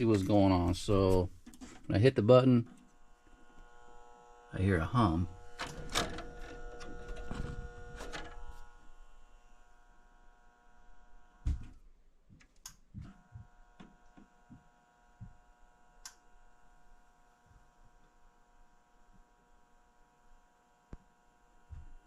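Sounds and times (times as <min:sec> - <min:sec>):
steady electrical hum: 0:00.0 - 0:11.8.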